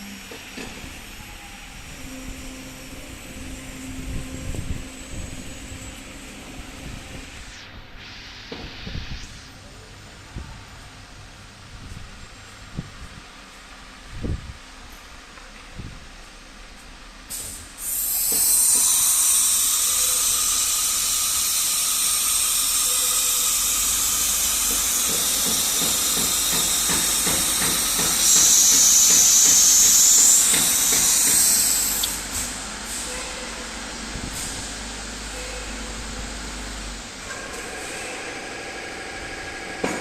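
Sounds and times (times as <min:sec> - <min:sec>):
cnc router hissing: 0:00.0 - 0:07.8, 0:17.8 - 0:32.6.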